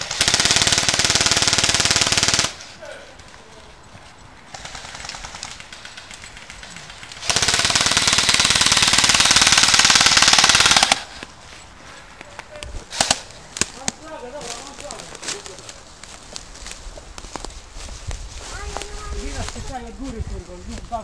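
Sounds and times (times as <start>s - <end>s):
airsoft gun full auto bursts: 0.0s - 2.6s, 4.5s - 11.1s.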